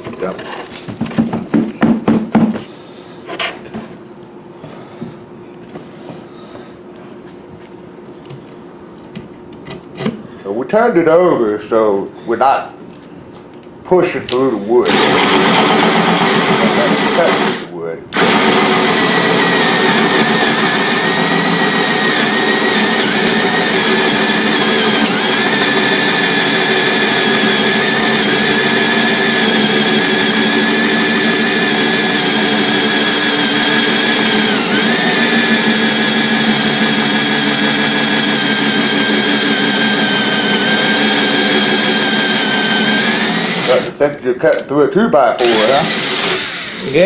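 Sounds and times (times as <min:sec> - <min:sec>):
power drill with hole saw in wood: 0:14.8 - 0:44.0, 0:45.4 - 0:47.0.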